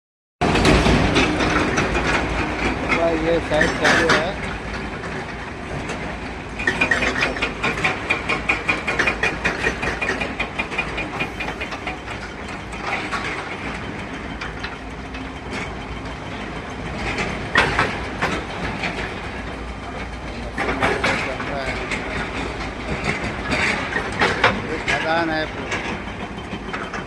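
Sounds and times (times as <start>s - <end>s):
machinery rattling: 0.4s - 27.0s
rapid metallic clattering: 0.4s - 27.0s.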